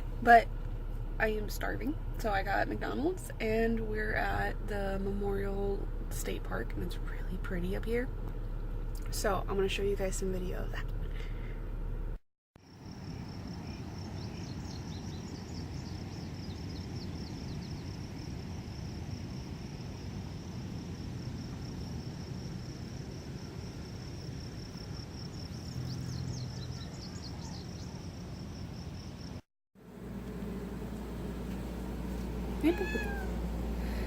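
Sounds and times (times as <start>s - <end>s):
low rumbling background noise: 0.0s - 12.2s, 29.8s - 34.0s
insects trilling: 12.6s - 34.0s.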